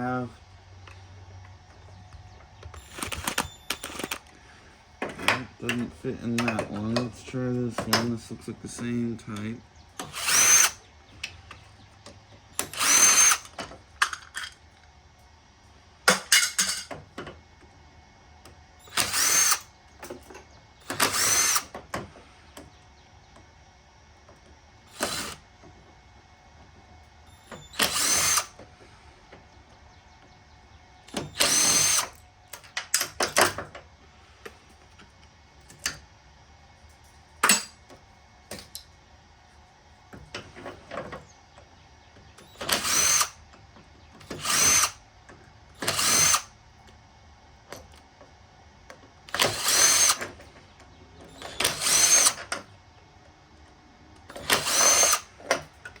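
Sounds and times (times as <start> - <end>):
power drill whining: 2.6 - 10.9, 12.6 - 14.5, 18.8 - 19.8, 20.8 - 22.6, 24.9 - 25.5, 27.3 - 29.1, 31.0 - 33.6, 42.4 - 43.4, 44.2 - 45.0, 45.8 - 46.6, 49.3 - 50.4, 51.3 - 52.6, 54.2 - 56.0.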